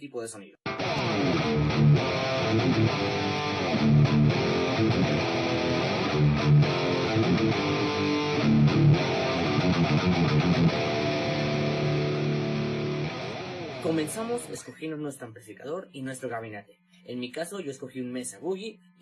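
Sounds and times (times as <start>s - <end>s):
distorted electric guitar riff: 0.7s - 14.7s.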